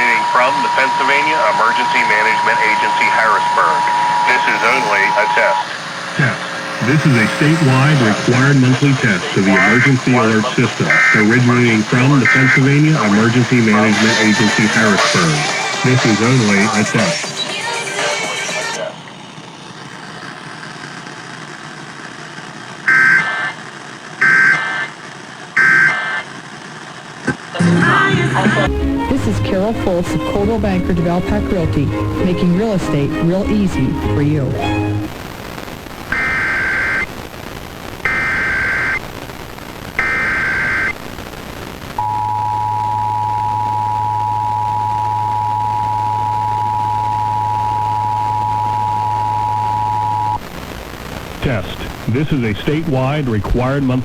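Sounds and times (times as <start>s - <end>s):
low hum: 0.0s - 15.2s, 27.6s - 52.2s
buzzy digital data tones: 0.0s - 15.3s, 35.0s - 51.3s
radio hiss: 0.0s - 54.0s
two-tone attention signal: 42.0s - 50.4s.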